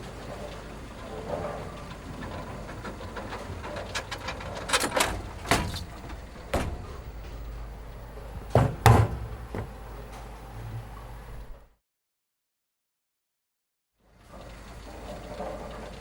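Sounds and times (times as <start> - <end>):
steady low rumble: 5.2 - 8.6
sharp knocks: 5.5 - 7.5, 8.4 - 9.8.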